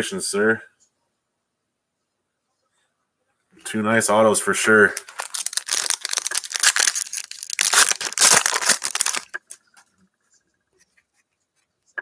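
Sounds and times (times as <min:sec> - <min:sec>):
foil wrappers crinkling and tearing: 0:04.9 - 0:09.6.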